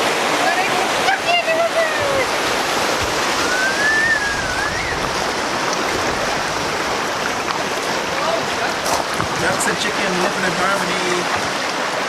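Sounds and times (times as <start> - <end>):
high wavering call: 3.4 - 5.0.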